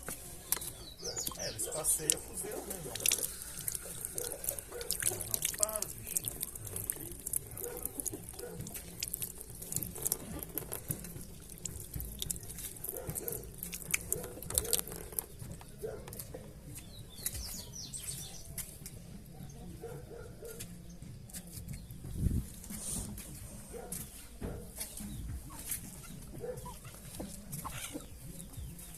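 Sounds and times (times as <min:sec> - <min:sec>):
dripping rainwater: 0:01.1 - 0:15.5.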